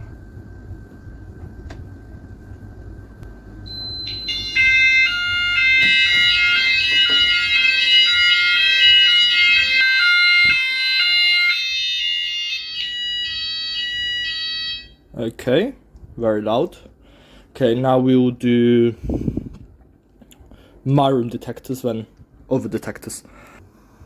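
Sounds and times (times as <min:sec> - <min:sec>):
fire alarm sounders: 0:03.6 - 0:15.2.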